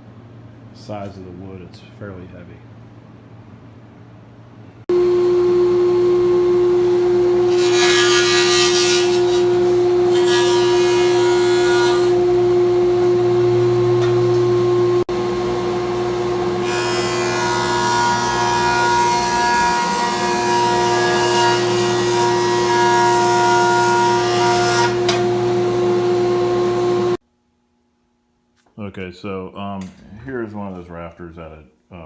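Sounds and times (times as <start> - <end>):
electric wood planer whining: 4.9 - 27.2
planer cutting boards: 6.1 - 27.2.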